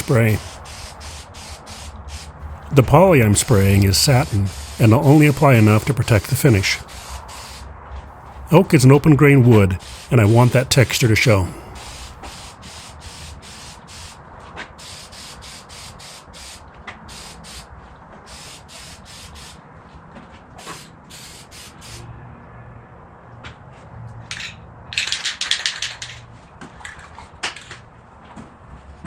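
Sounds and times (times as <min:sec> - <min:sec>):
aerosol can spraying: 0:00.0 - 0:07.6, 0:08.5 - 0:14.2, 0:14.8 - 0:17.7, 0:18.3 - 0:19.6, 0:20.6 - 0:22.0.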